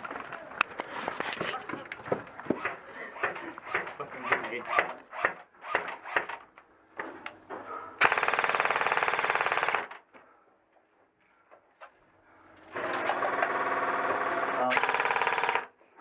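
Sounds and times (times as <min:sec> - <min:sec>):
airsoft rifle full-auto bursts: 0:08.0 - 0:10.0, 0:12.7 - 0:15.7.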